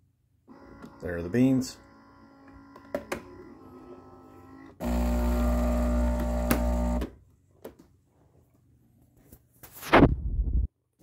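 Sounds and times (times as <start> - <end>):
espresso machine buzzing: 0.5 - 7.1.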